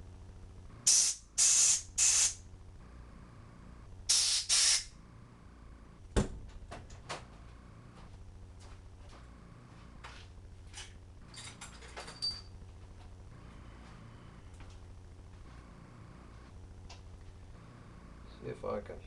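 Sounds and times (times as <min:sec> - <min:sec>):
hissing spray bursts: 0:00.8 - 0:02.4, 0:04.1 - 0:04.9.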